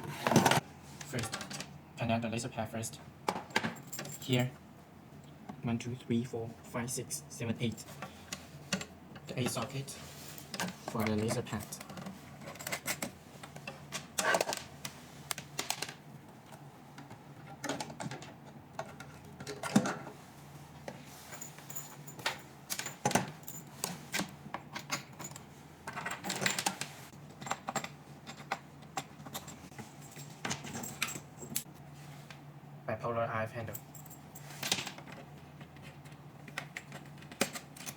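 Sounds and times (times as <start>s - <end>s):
cable plugs clicking and rattling: 10.5s - 20.1s, 34.9s - 37.9s.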